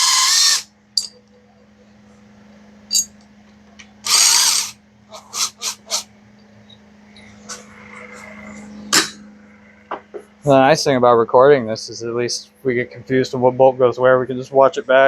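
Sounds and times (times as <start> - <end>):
power tool spinning out bolts: 4.0 - 6.1.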